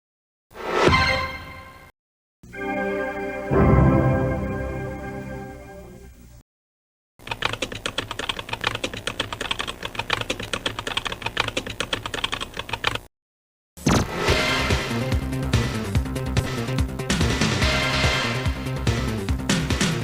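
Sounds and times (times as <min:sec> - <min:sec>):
music: 0:00.9 - 0:06.4, 0:14.0 - 0:20.0
rapid keyboard typing: 0:07.2 - 0:13.1.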